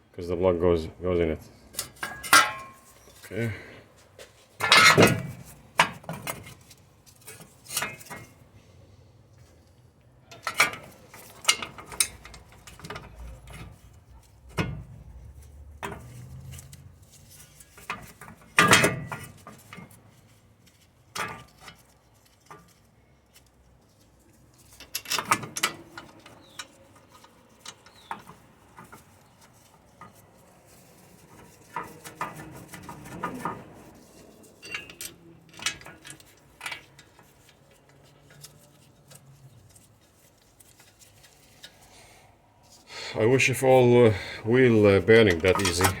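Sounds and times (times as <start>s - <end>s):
metal tools clinking: 1.8s - 3.3s, 34.5s - 37.4s, 44.6s - 46.0s.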